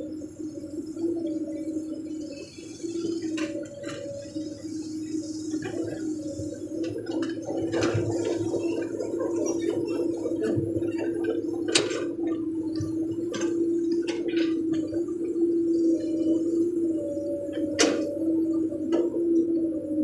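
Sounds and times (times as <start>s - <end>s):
diesel engine humming: 0.0s - 20.0s.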